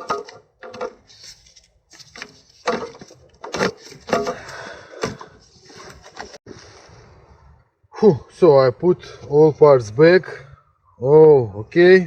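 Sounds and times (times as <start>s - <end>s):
hand tools being handled: 0.0s - 6.4s.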